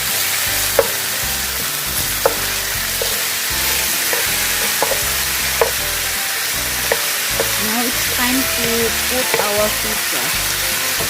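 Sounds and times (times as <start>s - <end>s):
chicken sizzling in hot oil: 0.0s - 11.0s
utensil clicking against pan: 0.8s - 1.2s, 1.9s - 10.1s.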